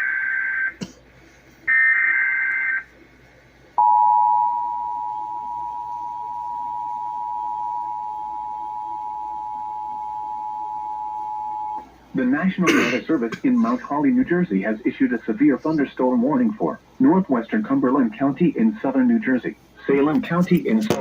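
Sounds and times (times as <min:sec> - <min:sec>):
steady two-tone attention signal: 0:03.8 - 0:11.8.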